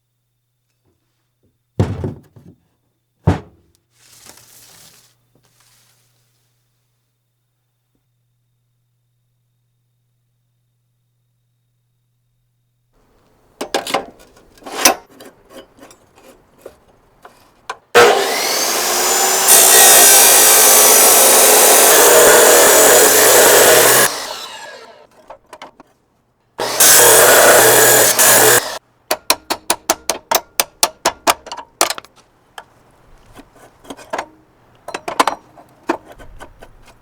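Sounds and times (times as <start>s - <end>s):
power tool whining on steel: 18.0s - 25.1s, 26.6s - 28.8s.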